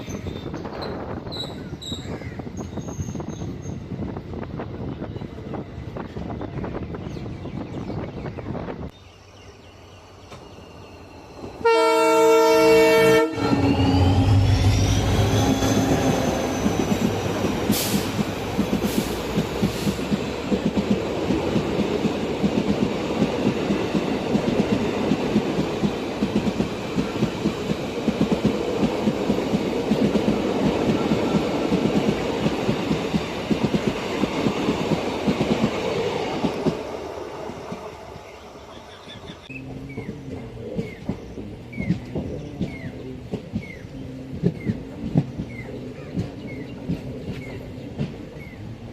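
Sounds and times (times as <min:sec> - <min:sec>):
train horn: 0:11.6 - 0:16.9
train wheels clattering on rails: 0:14.9 - 0:36.9, 0:39.7 - 0:48.7.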